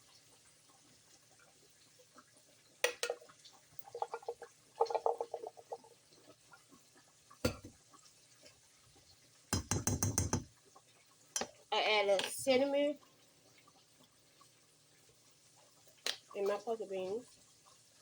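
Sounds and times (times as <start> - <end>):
pots clattering: 2.8 - 5.9, 7.5 - 7.8
knock: 9.6 - 10.5.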